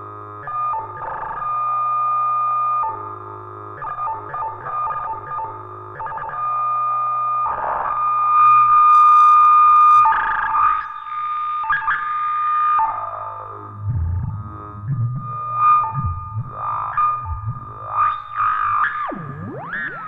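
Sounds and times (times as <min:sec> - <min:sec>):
low bass drone: 0:13.8 - 0:18.0.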